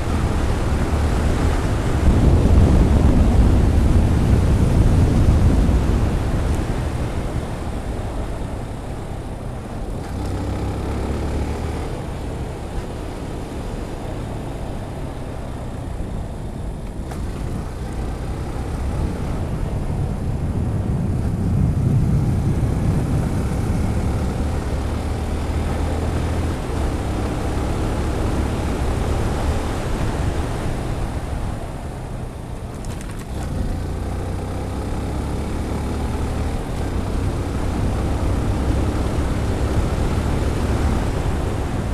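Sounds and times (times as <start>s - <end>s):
motorcycle running: 0.0s - 41.9s
wind buffeting microphone: 0.0s - 41.9s.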